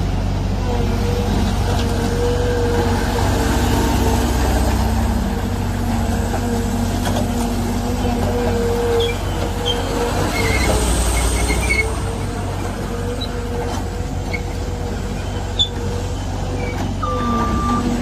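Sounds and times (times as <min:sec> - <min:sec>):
diesel engine running: 0:00.0 - 0:18.0
back-up alarm beeping: 0:17.0 - 0:18.0.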